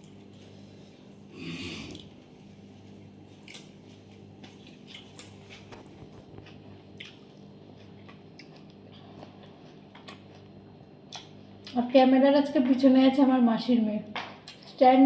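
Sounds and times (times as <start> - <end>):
person chewing food: 0.0 - 11.8
steady low hum: 0.0 - 15.0.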